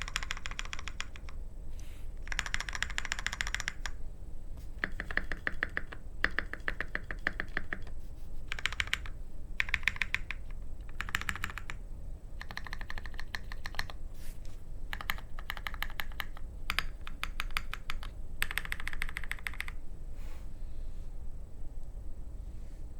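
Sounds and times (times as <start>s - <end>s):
mechanical keyboard key clicks: 12.4s - 14.0s.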